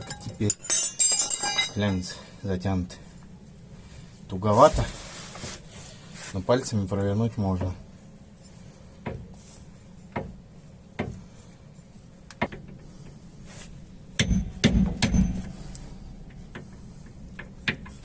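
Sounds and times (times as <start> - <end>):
metal-on-metal knocks ringing: 14.2 - 15.5.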